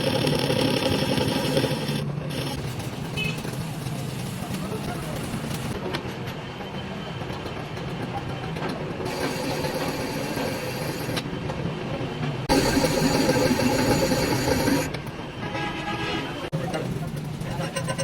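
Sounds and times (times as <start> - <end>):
lathe running: 0.0 - 2.6, 9.1 - 11.2, 12.5 - 15.0.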